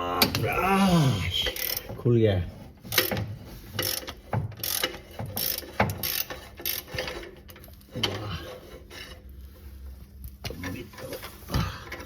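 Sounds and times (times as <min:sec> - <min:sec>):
wrench clicking on rusty nuts: 0:01.4 - 0:02.0, 0:02.9 - 0:03.2, 0:03.8 - 0:07.6.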